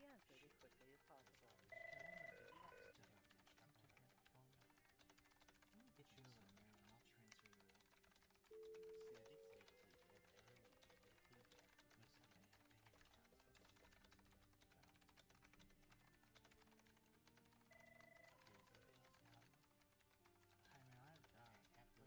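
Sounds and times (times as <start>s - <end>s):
keyboard typing clatter: 0.0s - 22.0s
soft background music: 0.0s - 22.0s
electronic telephone beeps: 1.7s - 2.9s, 8.5s - 9.6s, 17.7s - 18.6s.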